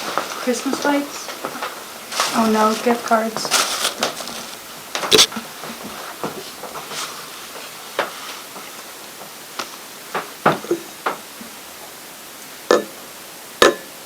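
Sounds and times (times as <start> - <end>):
steady hiss: 0.0 - 14.0.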